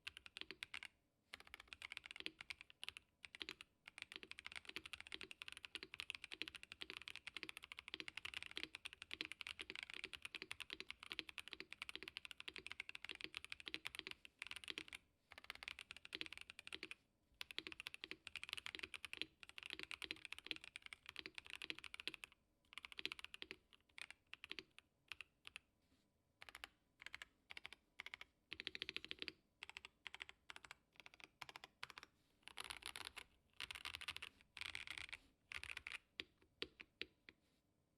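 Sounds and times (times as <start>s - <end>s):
mechanical keyboard typing: 0.0s - 25.6s, 26.4s - 37.3s.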